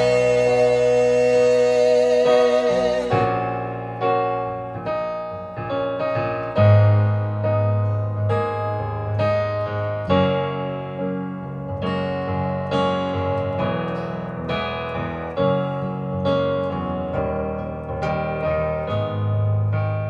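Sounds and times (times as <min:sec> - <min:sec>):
person singing with vibrato: 0:00.0 - 0:03.6
electric piano chords: 0:00.0 - 0:20.0.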